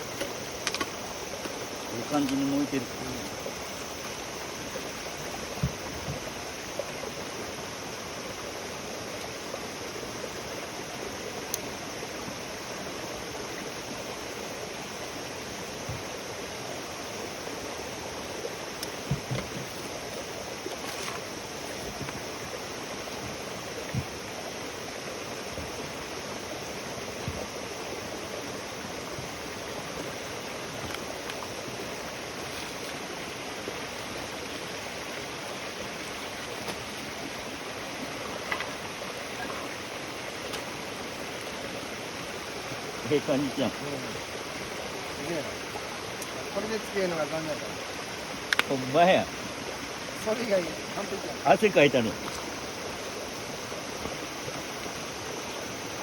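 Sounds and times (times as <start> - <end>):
campfire rushing: 0.0 - 10.6, 11.2 - 41.3
burning wood popping and crackling: 0.1 - 1.6.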